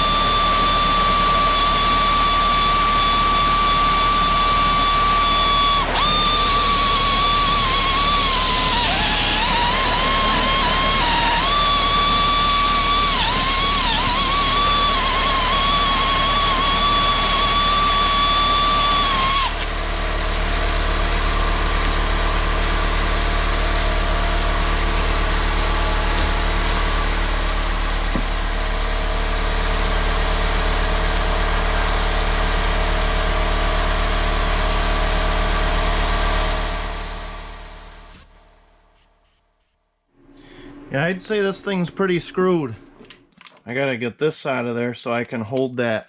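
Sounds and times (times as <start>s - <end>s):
air grinder high whine: 0.0s - 19.8s, 38.0s - 38.3s
low mechanical hum: 0.0s - 43.9s.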